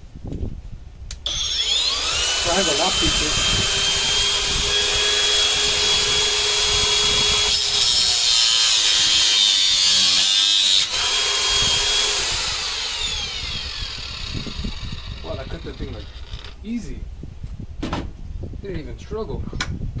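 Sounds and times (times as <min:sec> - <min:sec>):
angle grinder cutting steel: 0:01.3 - 0:16.6.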